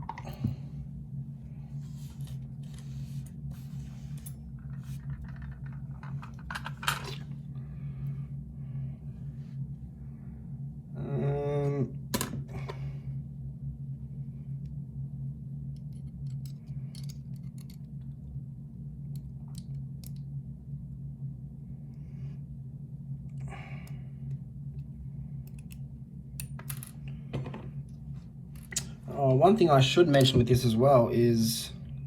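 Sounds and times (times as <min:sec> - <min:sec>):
low hum: 0:00.0 - 0:32.0
metallic clicks of lock picking tools: 0:15.8 - 0:18.0, 0:25.4 - 0:25.8, 0:26.4 - 0:27.0.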